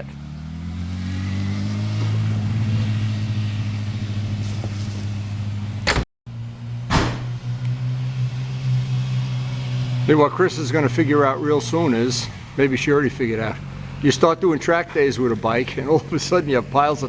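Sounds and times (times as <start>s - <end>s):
motorcycle engine running steadily: 2.4s - 8.6s.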